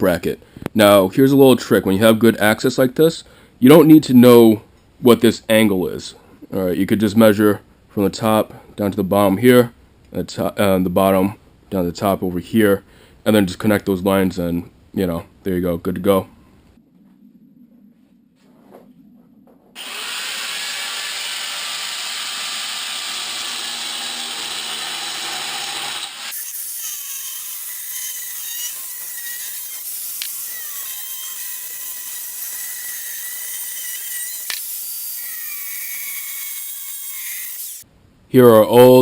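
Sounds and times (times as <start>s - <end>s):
power tool cutting steel: 19.8s - 37.8s.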